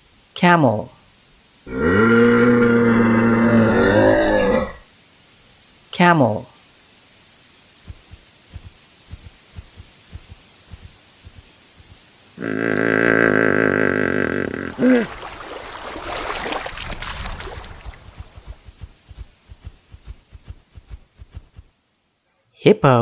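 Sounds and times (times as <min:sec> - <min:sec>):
camel groaning: 0:01.7 - 0:04.8
soft regular thumps: 0:07.8 - 0:12.1, 0:16.9 - 0:21.8.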